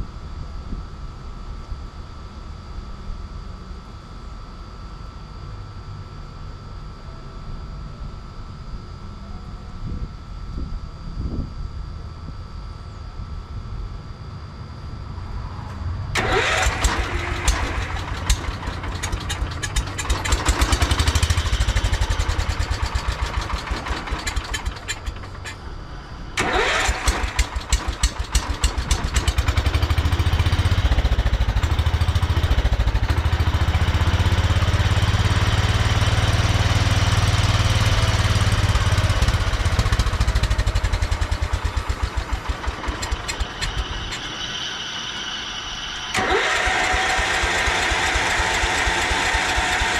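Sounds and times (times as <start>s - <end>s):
riding lawn mower engine running: 15.7s - 49.9s.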